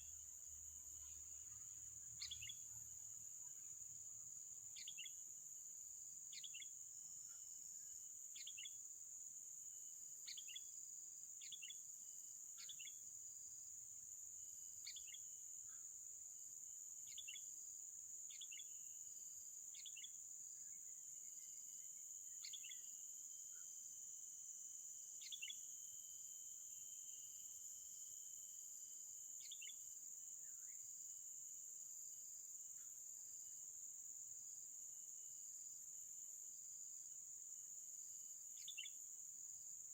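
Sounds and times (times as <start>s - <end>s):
bird chirping: 2.2s - 2.7s, 4.8s - 5.2s.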